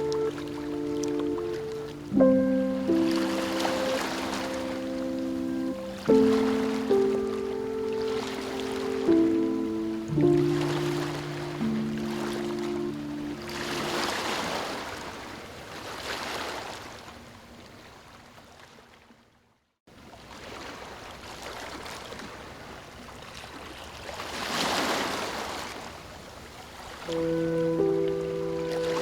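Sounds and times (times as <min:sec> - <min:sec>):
soft sustained music notes: 0:00.0 - 0:14.5, 0:27.1 - 0:29.0
ocean waves washing: 0:00.0 - 0:16.9, 0:26.9 - 0:29.0.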